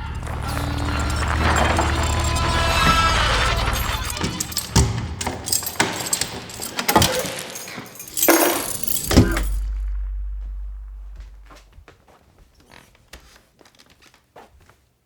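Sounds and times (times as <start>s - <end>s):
low rumble: 0.0s - 4.6s, 8.8s - 11.8s
clattering and knocking: 0.0s - 11.7s.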